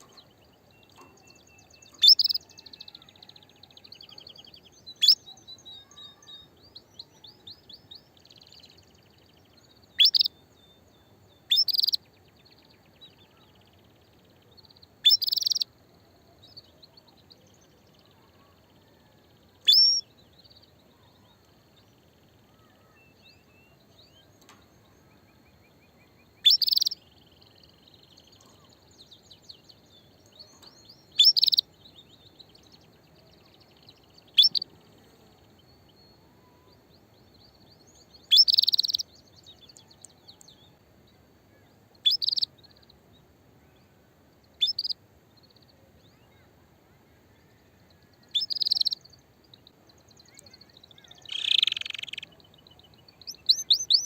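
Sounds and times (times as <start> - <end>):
canary chirping: 0.0 - 2.7, 10.0 - 10.4, 11.5 - 12.0, 15.0 - 15.6, 19.6 - 20.0, 26.4 - 27.5, 30.5 - 31.6, 34.1 - 34.7, 38.3 - 39.1, 42.0 - 42.5, 44.6 - 45.0, 48.3 - 49.0, 50.3 - 54.0
soft bird twittering: 0.0 - 15.7, 16.5 - 40.8, 41.5 - 42.9, 44.6 - 46.5, 47.1 - 54.0.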